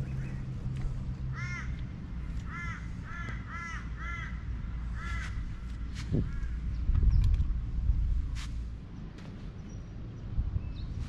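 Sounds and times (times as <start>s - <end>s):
steady low rumble: 0.0s - 11.0s
crow cawing: 1.3s - 1.8s, 2.4s - 5.4s.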